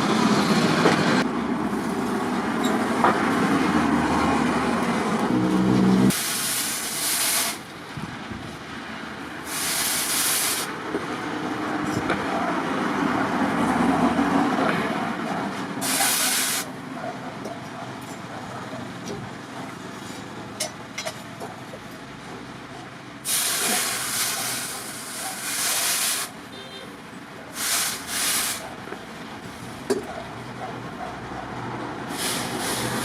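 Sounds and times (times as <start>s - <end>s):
steady background noise: 0.0s - 33.0s
loud hissing bursts: 6.1s - 7.7s, 9.4s - 10.8s, 15.8s - 16.7s, 23.2s - 26.4s, 27.5s - 28.7s, 32.1s - 33.0s.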